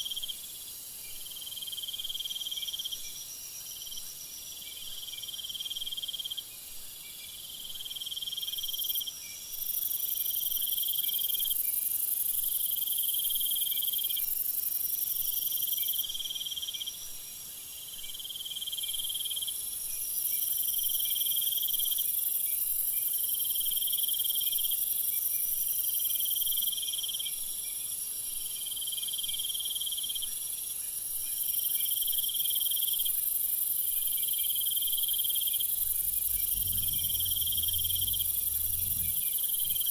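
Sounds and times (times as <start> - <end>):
steady high-pitched hiss: 0.0 - 39.9
insects trilling: 31.0 - 39.9.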